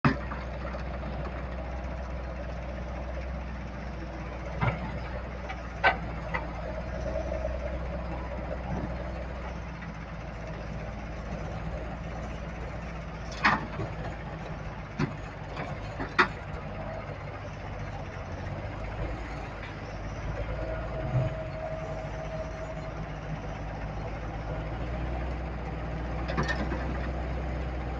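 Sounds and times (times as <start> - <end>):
diesel engine running: 0.0 - 27.9.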